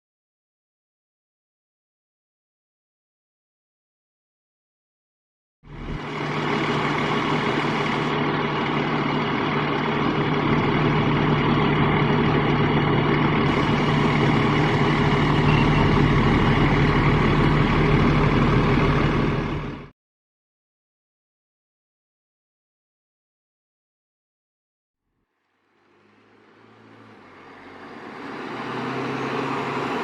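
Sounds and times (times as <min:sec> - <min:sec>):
diesel engine running: 0:05.7 - 0:19.9, 0:25.8 - 0:30.0.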